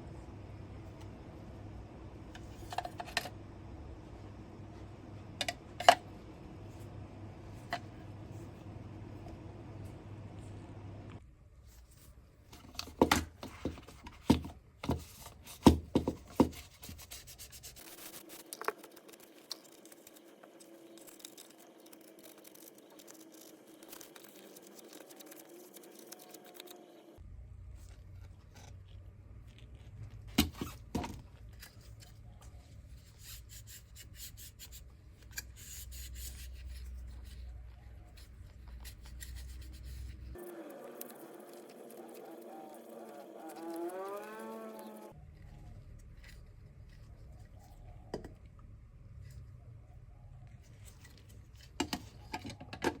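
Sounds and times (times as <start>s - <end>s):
faint steady hum: 0.0s - 53.0s
rubbing and handling noises: 11.5s - 27.0s, 27.6s - 48.1s.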